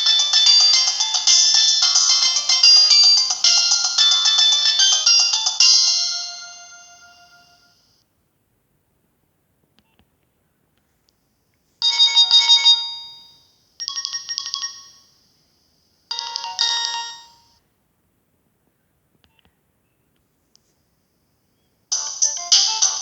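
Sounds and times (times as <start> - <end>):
mobile phone ringtone: 0.0 - 7.9, 11.8 - 15.3, 16.1 - 17.6, 21.9 - 23.0.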